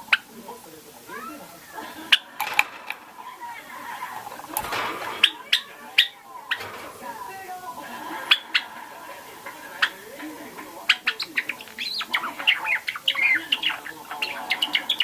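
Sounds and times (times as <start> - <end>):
bird clicks: 1.8 - 7.4.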